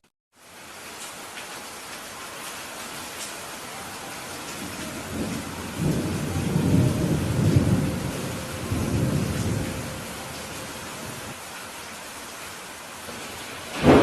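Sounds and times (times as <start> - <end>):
heavy rain: 0.3 - 14.0
thunder rumbling: 4.2 - 11.4, 13.1 - 14.0.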